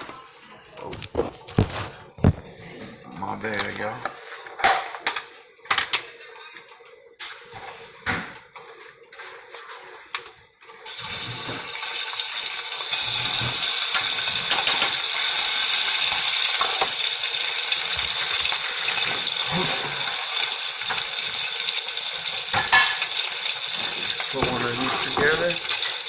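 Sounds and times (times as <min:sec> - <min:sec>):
tap water running into sink: 0:10.9 - 0:26.0.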